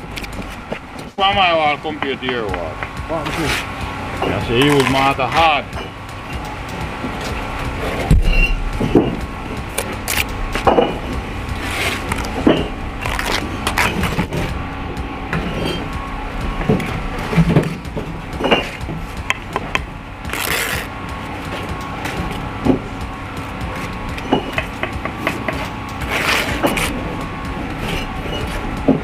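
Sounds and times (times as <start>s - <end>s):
machinery humming: 0.0s - 29.0s.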